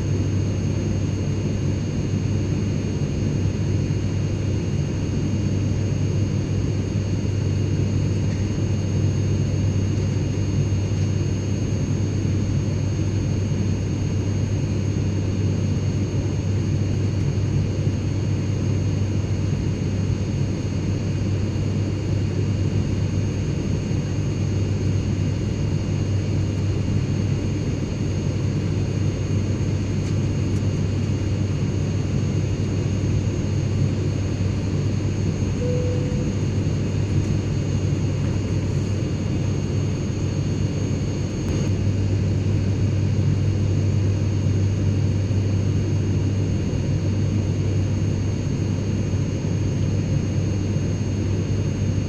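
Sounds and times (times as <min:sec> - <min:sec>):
airplane cabin engine drone: 0:00.0 - 0:52.0
faint high whines: 0:35.0 - 0:38.4.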